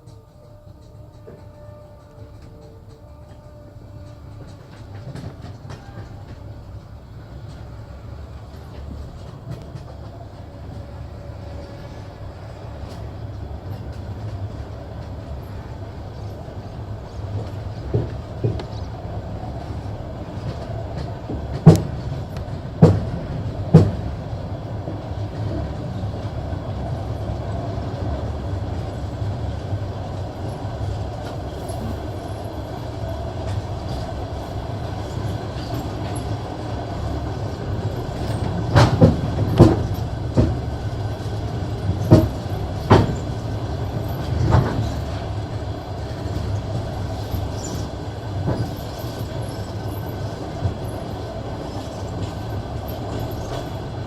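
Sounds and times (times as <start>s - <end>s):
train wheels rumbling on rail: 0.0s - 54.0s
wheels clacking over rail joints: 12.8s - 54.0s.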